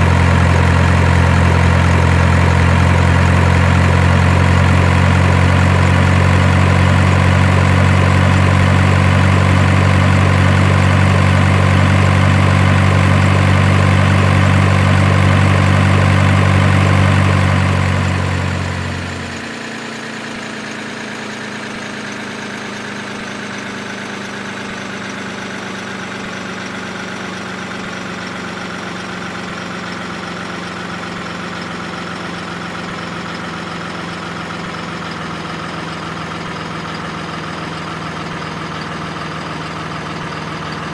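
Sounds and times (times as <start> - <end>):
loud low drone: 0.0 - 19.8
steady engine-like hum: 0.0 - 40.9.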